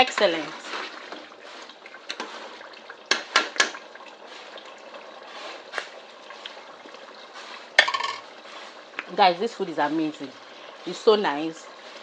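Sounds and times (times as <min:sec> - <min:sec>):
utensil clinking on pot: 0:07.8 - 0:08.3.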